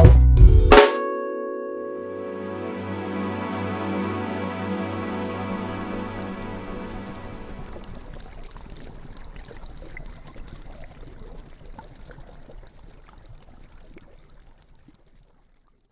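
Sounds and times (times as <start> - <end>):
background music: 0.0 - 7.9
water noise: 3.0 - 15.9
small crackles and pops: 7.8 - 15.9.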